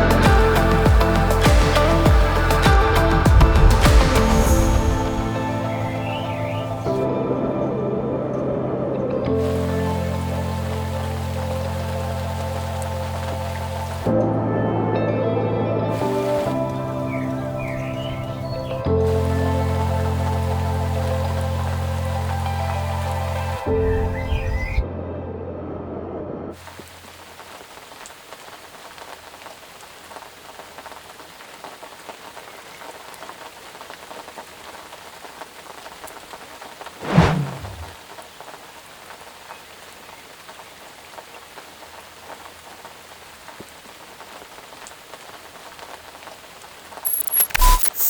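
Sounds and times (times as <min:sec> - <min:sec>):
steady rain falling: 0:00.0 - 0:07.2, 0:09.3 - 0:14.2, 0:15.9 - 0:24.1, 0:26.6 - 0:48.0
loud crash: 0:03.3 - 0:05.7, 0:37.0 - 0:38.0.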